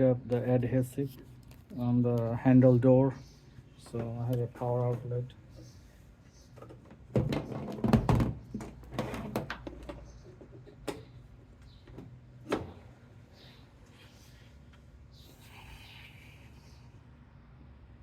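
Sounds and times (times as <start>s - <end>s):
handling knocks and clatter: 6.6s - 11.1s.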